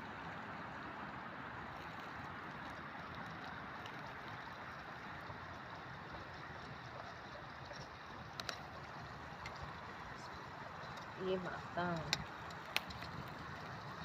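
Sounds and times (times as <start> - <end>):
sharp crackles: 7.7 - 14.0.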